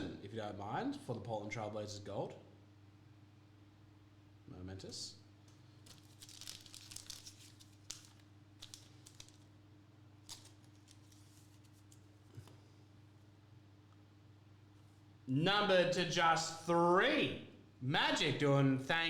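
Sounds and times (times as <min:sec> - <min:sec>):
plastic packaging crinkling: 0:05.6 - 0:12.2.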